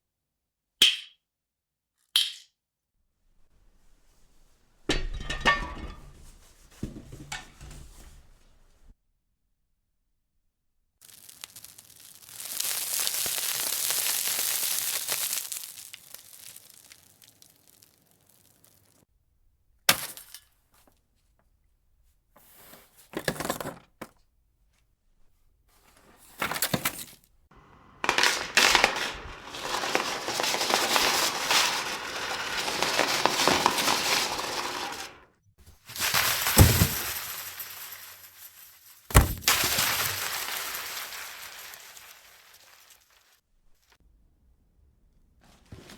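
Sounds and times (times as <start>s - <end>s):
objects crashing onto hard floor: 4.9s - 8.3s, 28.0s - 43.1s.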